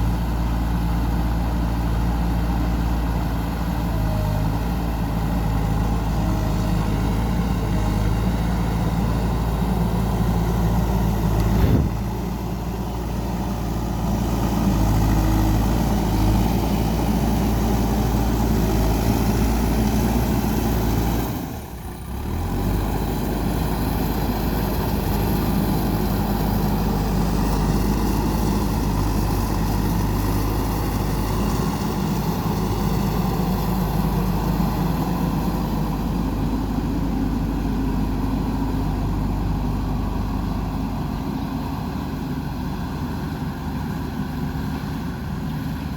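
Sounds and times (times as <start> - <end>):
backhoe diesel engine running: 0.0 - 45.9.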